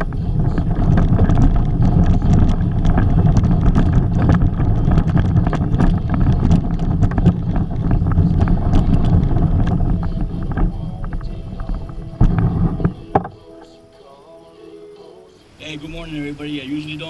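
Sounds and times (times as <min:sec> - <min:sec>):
small clicks and knocks: 0:00.0 - 0:13.4
wind buffeting microphone: 0:00.0 - 0:13.7.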